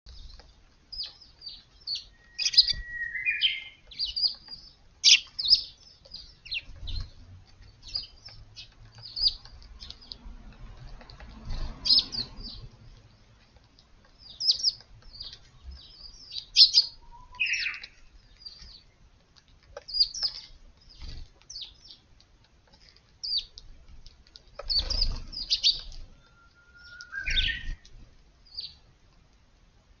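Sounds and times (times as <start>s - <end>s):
bush warbler song: 0.1s - 10.3s, 11.5s - 13.4s, 14.1s - 19.0s, 24.6s - 28.9s
sparrows chirping: 0.1s - 29.0s.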